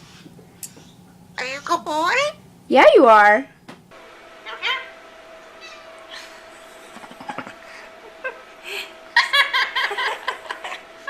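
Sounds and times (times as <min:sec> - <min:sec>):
person laughing: 0:06.2 - 0:10.9.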